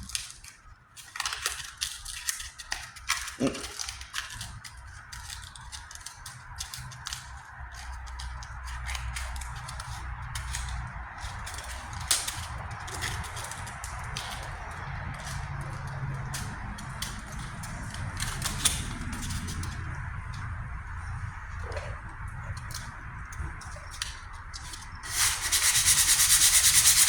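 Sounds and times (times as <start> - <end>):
sandpaper rasping on steel: 25.0 - 27.0.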